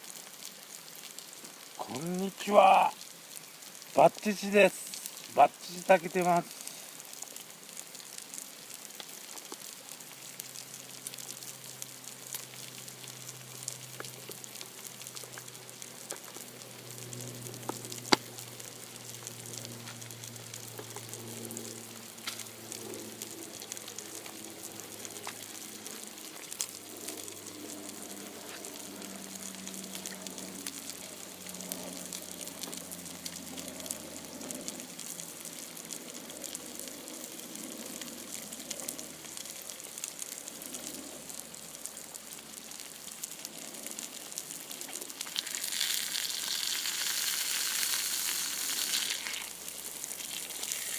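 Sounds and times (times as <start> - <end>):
food frying sizzle: 0.0 - 50.9.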